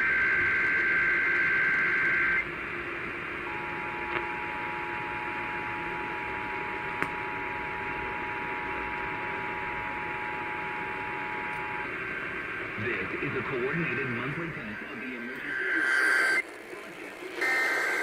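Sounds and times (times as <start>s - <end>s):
radio static hiss: 0.0s - 2.5s, 3.4s - 18.0s
shrill digital data burst: 15.5s - 16.4s.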